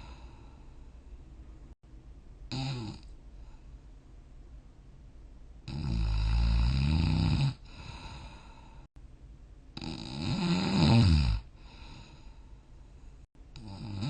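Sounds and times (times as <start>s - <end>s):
quiet breath: 0.0s - 1.7s, 3.0s - 4.2s, 7.6s - 9.0s, 11.5s - 13.7s
person snoring: 2.5s - 3.1s, 5.6s - 8.9s, 9.8s - 12.4s, 13.6s - 14.0s.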